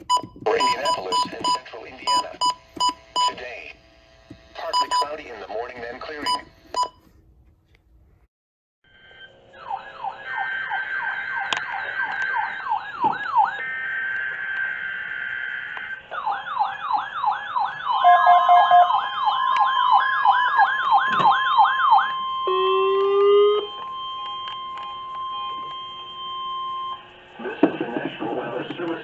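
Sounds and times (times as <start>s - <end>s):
steady beeping tones: 0.0s - 3.6s, 4.6s - 5.3s, 6.1s - 7.0s
steady warning alarm tone: 0.0s - 7.0s, 9.5s - 27.6s
siren-like wails: 8.9s - 28.7s.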